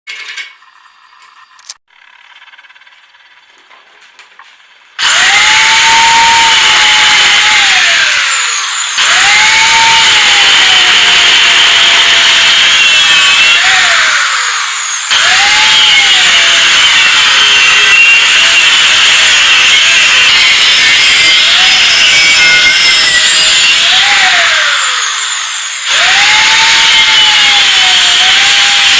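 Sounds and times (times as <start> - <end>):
power tool motor running: 5.0 - 28.9.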